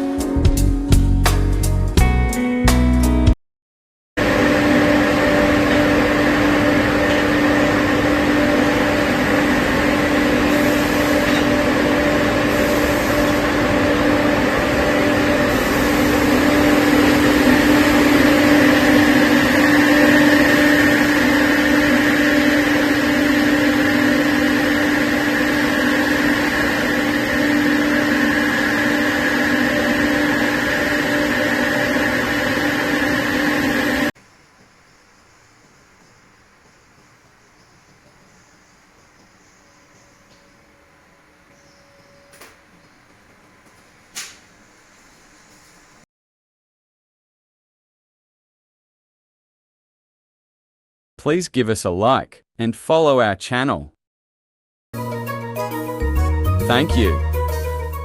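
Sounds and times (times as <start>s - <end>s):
industrial machinery humming: 4.2s - 46.0s.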